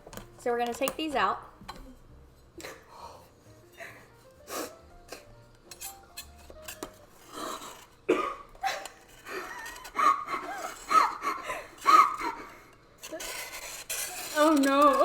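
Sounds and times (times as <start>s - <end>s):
dishes clinking: 5.7s - 10.0s.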